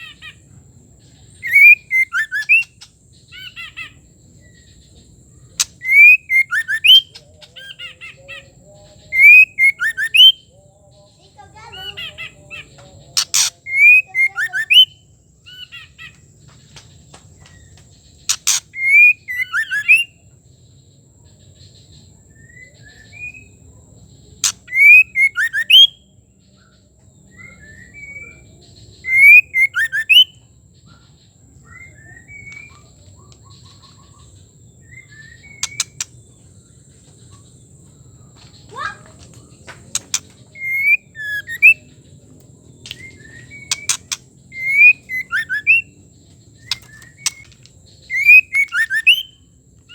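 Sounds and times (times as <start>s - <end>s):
bird singing whistled phrases: 1.4s - 2.8s, 5.6s - 7.8s, 9.0s - 10.5s, 13.2s - 15.0s, 18.3s - 20.2s, 24.4s - 26.0s, 27.3s - 30.4s, 31.6s - 32.9s, 34.8s - 36.1s, 39.9s - 41.9s, 42.9s - 46.0s, 46.6s - 49.5s
bird clicks: 5.6s - 5.9s, 13.2s - 13.5s, 18.3s - 18.7s, 35.6s - 36.2s, 39.2s - 41.7s, 42.3s - 45.7s, 46.6s - 49.1s.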